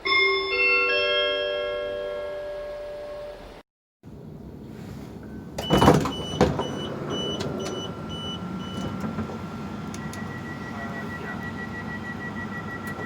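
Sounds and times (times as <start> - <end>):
train door mechanism noise: 4.1 - 13.0
door warning beeps: 5.2 - 13.0.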